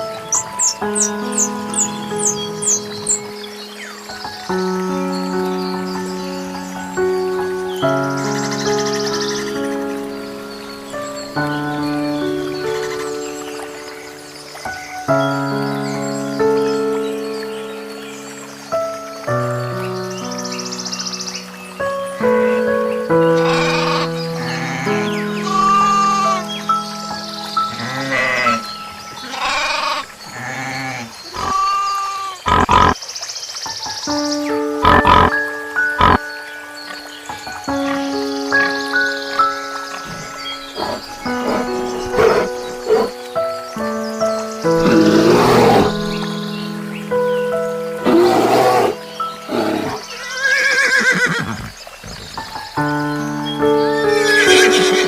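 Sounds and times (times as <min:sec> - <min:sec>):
background music with held notes: 0:00.0 - 0:31.5, 0:32.4 - 0:55.0
horse whinnying: 0:23.4 - 0:26.4, 0:27.7 - 0:33.0, 0:40.1 - 0:43.2, 0:48.0 - 0:52.4, 0:54.2 - 0:55.0
livestock bleating: 0:23.4 - 0:26.4, 0:27.7 - 0:33.0.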